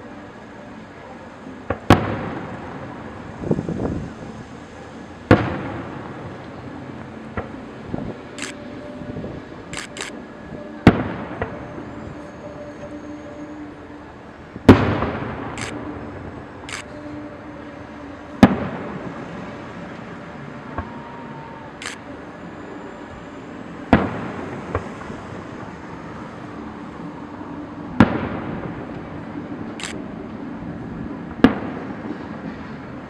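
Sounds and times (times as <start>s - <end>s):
fireworks hissing: 0.0s - 33.0s
fireworks booming: 1.6s - 3.8s, 5.3s - 6.6s, 10.8s - 11.9s, 14.6s - 16.3s, 18.4s - 21.5s, 23.9s - 25.7s, 28.0s - 29.2s, 31.3s - 32.8s.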